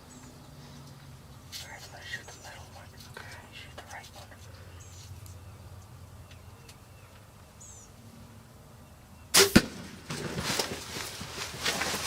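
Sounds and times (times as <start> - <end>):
rustling and scuffling: 10.1 - 12.0.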